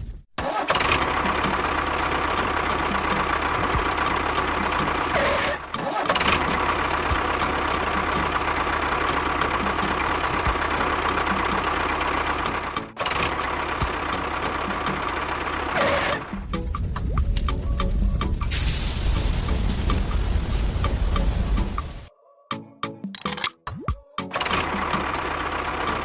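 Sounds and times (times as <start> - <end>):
engine running: 0.4 - 22.0, 24.4 - 26.0.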